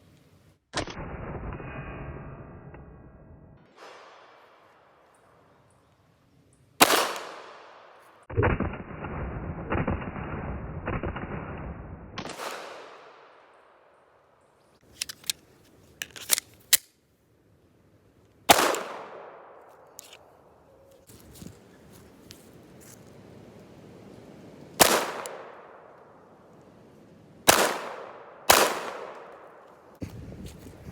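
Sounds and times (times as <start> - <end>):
pistol shots: 6.8 - 8.9, 12.2 - 13.7, 18.5 - 19.6, 24.8 - 25.9, 27.5 - 29.6.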